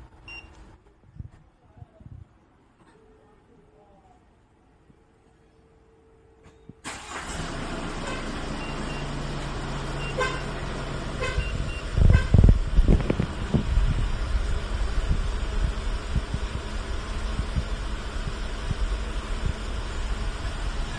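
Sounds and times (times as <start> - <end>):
diesel truck engine idling: 6.9 - 20.9
loud low rumbles: 10.7 - 20.9.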